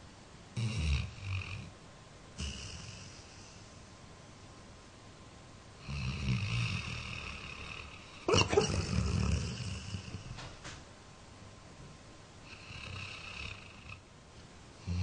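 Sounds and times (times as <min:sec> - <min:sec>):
dog snoring: 0:00.6 - 0:01.7, 0:02.4 - 0:03.7, 0:05.8 - 0:10.4, 0:12.4 - 0:14.0, 0:14.8 - 0:15.0.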